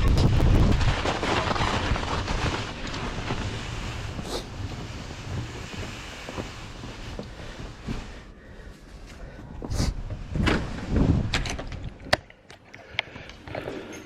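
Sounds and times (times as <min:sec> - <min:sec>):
wind buffeting microphone: 0:00.0 - 0:02.5.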